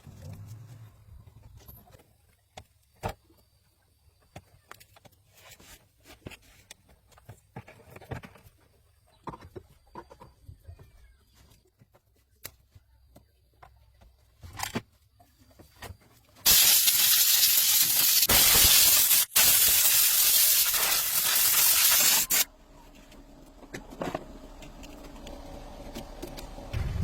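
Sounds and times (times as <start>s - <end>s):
loud spraying hiss: 16.5s - 22.5s.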